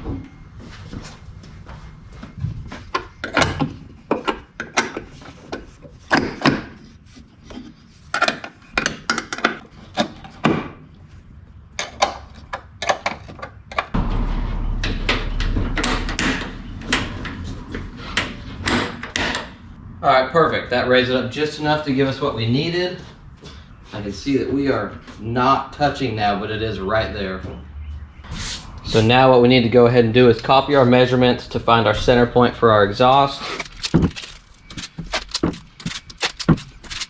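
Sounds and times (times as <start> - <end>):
steady low hum: 14.0 - 20.0
hand tools clicking on metal: 33.6 - 37.0.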